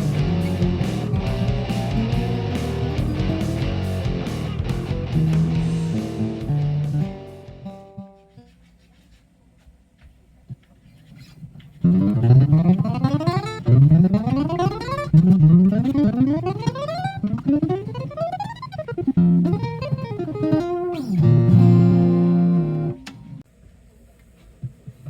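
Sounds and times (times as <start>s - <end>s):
guitar string tuning up: 0.0s - 8.3s, 11.8s - 23.4s.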